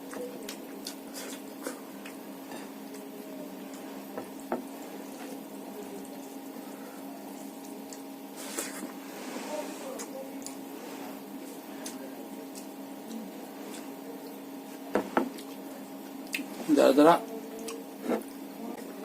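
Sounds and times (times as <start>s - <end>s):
steady hum: 0.0s - 19.0s
wet eating and chewing: 0.0s - 19.0s.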